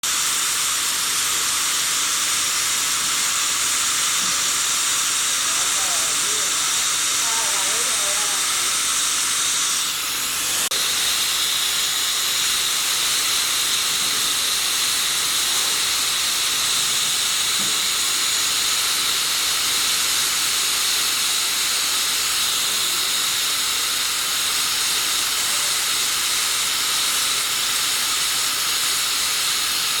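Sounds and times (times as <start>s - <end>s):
grinding machine grinding metal: 0.0s - 30.0s.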